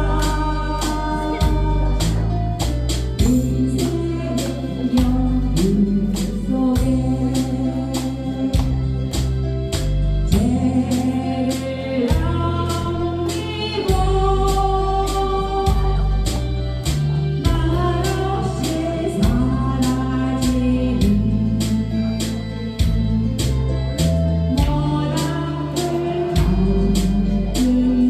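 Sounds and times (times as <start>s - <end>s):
woman singing a ballad: 0.0s - 9.0s, 10.3s - 16.5s, 17.4s - 23.4s, 24.5s - 28.0s
bass: 0.0s - 28.0s
organ-like keyboard: 0.0s - 28.0s
steady beat: 25.8s - 27.8s.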